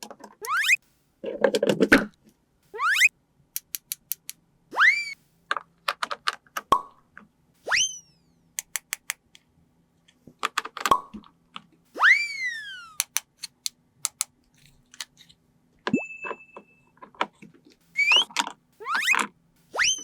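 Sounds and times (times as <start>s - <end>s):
plastic toy pieces clicking: 3.6s - 4.4s, 8.6s - 9.4s, 13.0s - 15.3s.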